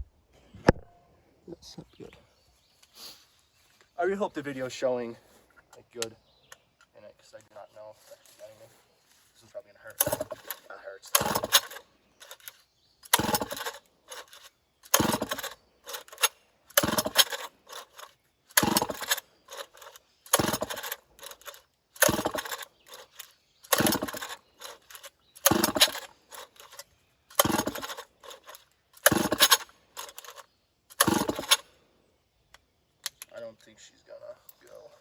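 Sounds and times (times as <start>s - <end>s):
chainsaw starter cord pulls: 9.9s - 31.7s.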